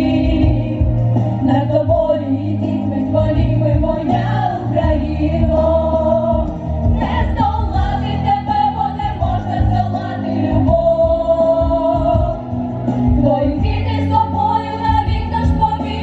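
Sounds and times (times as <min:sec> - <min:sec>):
choir singing long notes: 0:03.8 - 0:12.4, 0:13.4 - 0:16.0.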